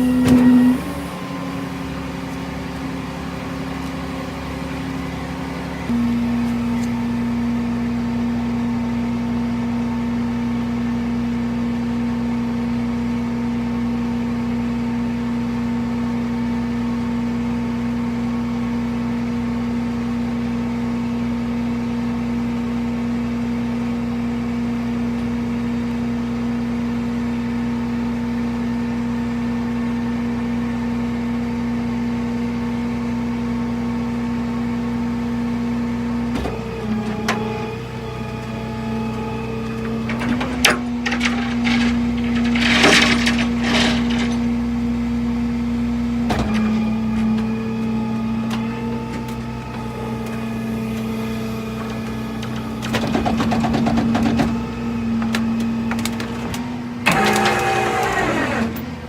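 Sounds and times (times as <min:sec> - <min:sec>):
vehicle machinery whine: 0:00.0 - 0:22.6, 0:24.0 - 0:59.0
mechanical hum: 0:28.6 - 0:59.0.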